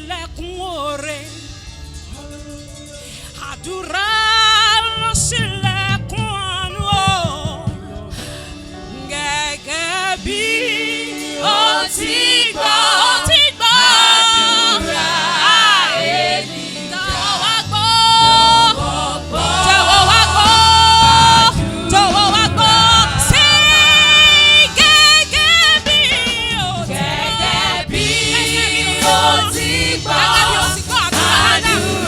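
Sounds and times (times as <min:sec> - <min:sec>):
low instrumental backing: 0:00.0 - 0:32.0
voices singing held notes: 0:08.9 - 0:32.0.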